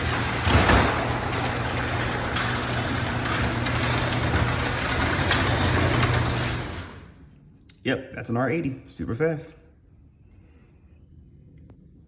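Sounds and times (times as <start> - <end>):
garage door rattling on tracks: 0.0 - 7.1
garage door clatter: 0.0 - 7.2
garage door opener motor humming: 0.0 - 7.3.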